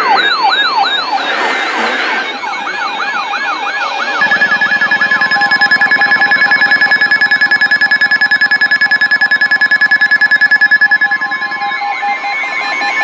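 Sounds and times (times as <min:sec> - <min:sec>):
rapid pulsing beeps: 0:04.2 - 0:11.8
steady alarm tones: 0:04.2 - 0:11.8.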